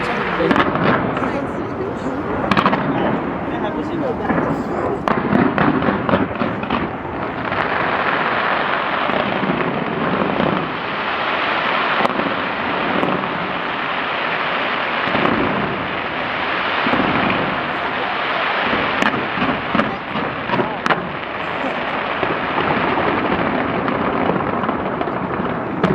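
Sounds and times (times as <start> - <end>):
fireworks bangs: 0.0 - 25.9
fireworks crackling: 0.0 - 25.9.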